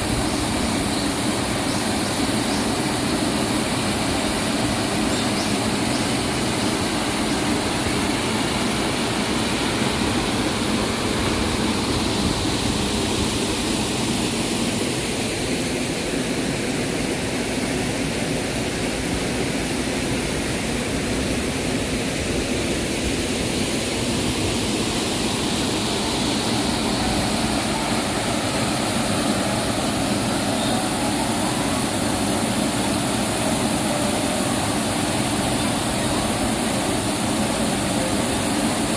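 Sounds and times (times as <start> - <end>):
stream water rushing: 0.0 - 38.9.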